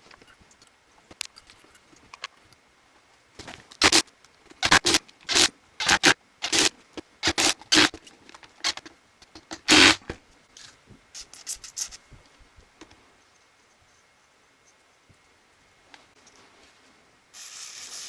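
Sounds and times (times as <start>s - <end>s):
scraping strokes by hand: 3.4s - 4.0s, 4.6s - 10.2s.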